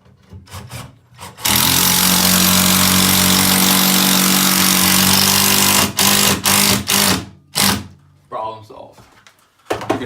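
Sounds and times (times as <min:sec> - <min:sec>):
cordless drill motor running: 0:01.4 - 0:07.8.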